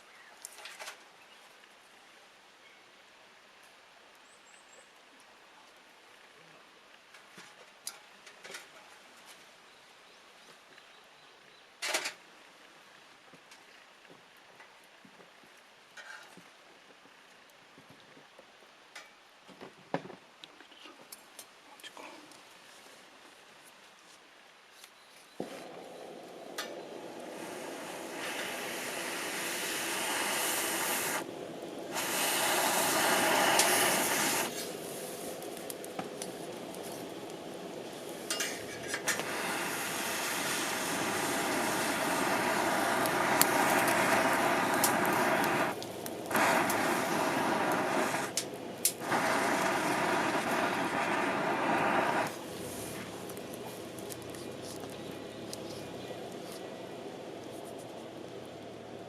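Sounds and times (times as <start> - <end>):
wood fire crackling: 24.7 - 59.0
loud rushing hiss: 25.4 - 58.2.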